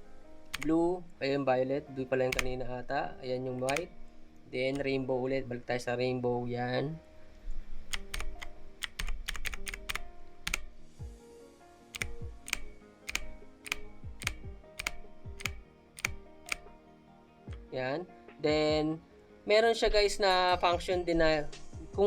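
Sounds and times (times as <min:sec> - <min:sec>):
mechanical keyboard clicking: 0:00.5 - 0:00.8, 0:02.2 - 0:02.8, 0:03.4 - 0:04.0, 0:04.6 - 0:05.0, 0:07.8 - 0:10.8, 0:11.9 - 0:16.7.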